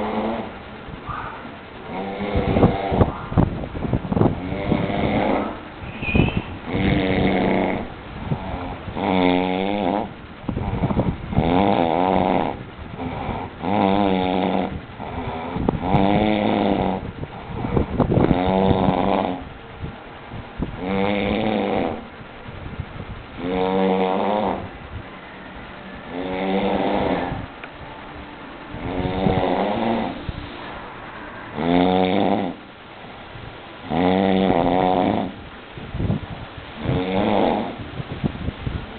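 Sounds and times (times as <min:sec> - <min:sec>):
man snoring heavily: 0:00.0 - 0:00.5, 0:01.9 - 0:03.1, 0:04.3 - 0:05.6, 0:06.6 - 0:19.5, 0:20.7 - 0:22.1, 0:23.4 - 0:24.7, 0:26.1 - 0:27.5, 0:28.8 - 0:30.6, 0:31.5 - 0:32.6, 0:33.8 - 0:35.4, 0:36.8 - 0:37.9.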